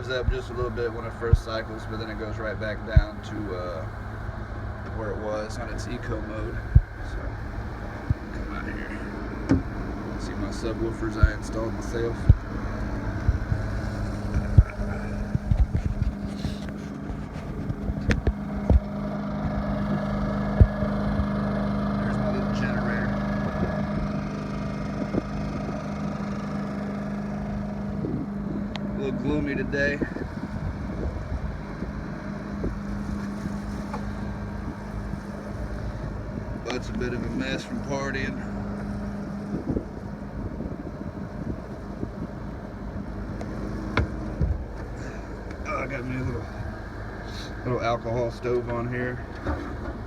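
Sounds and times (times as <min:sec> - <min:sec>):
generator humming: 0:00.0 - 0:50.0
wind buffeting microphone: 0:00.0 - 0:50.0
low thumps: 0:05.5 - 0:21.3, 0:25.0 - 0:45.7.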